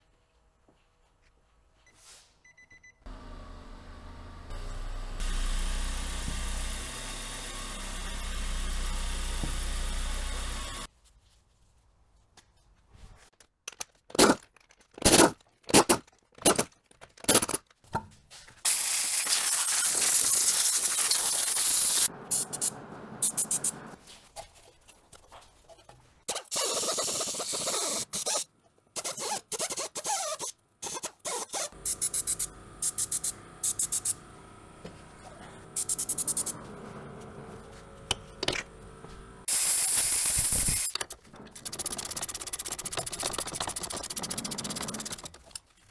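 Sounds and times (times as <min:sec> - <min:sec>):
sharp clicks and knocks: 0:38.0 - 0:45.7.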